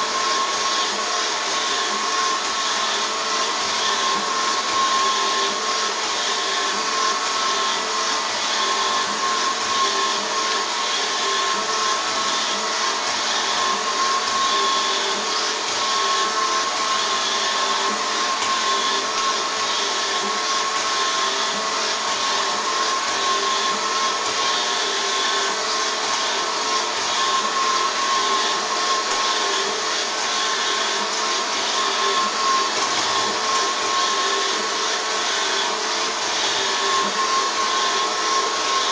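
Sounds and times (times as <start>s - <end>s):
robot vacuum cleaner whirring: 0.0s - 38.9s.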